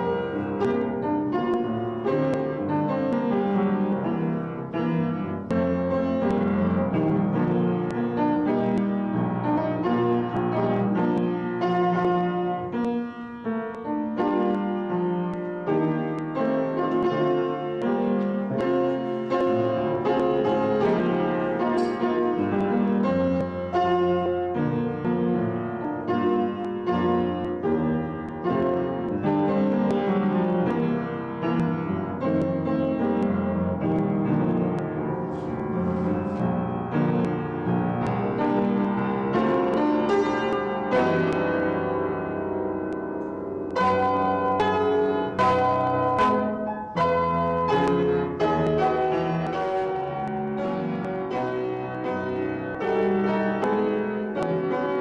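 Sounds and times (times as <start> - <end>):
piano piece: 0.0 - 55.0.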